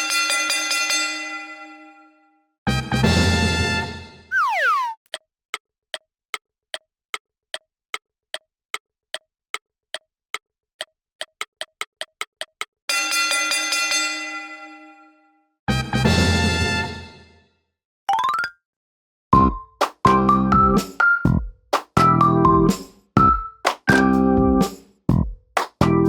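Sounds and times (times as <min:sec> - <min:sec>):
wood-block-like ticks: 0:05.0 - 0:12.8.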